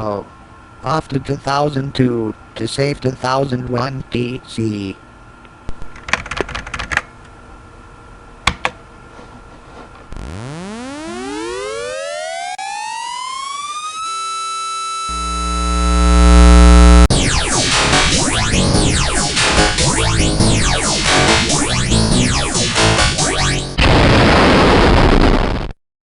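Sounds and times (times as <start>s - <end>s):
rising electronic whine: 10.1s - 24.7s
music with sweeping tones: 10.2s - 23.8s.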